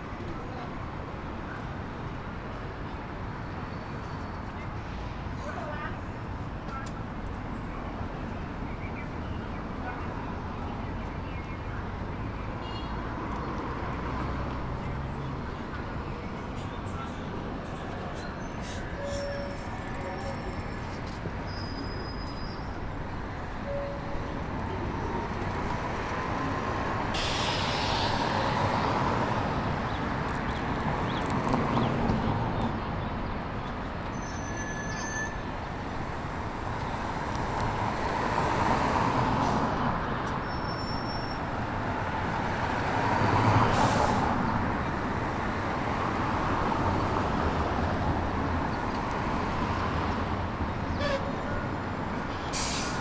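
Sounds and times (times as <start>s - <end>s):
vehicles passing: 4.5s - 34.2s, 35.3s - 53.0s
short hisses: 27.2s - 29.3s, 52.5s - 53.0s.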